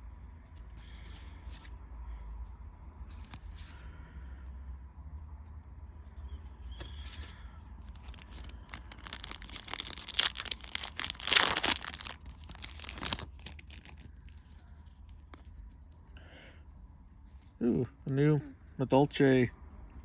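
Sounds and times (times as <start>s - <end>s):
foil pack ripping and crinkling: 7.8s - 15.2s.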